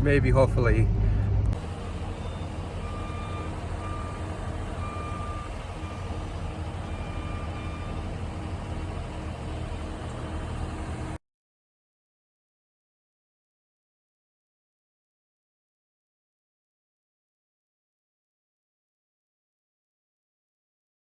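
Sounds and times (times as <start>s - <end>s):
low engine rumble: 0.0s - 11.2s
reversing vehicle backup alarm beeping: 1.6s - 11.2s.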